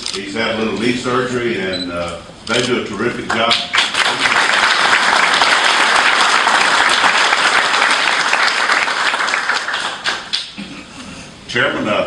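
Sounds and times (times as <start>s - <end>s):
audience applauding: 3.7s - 10.6s.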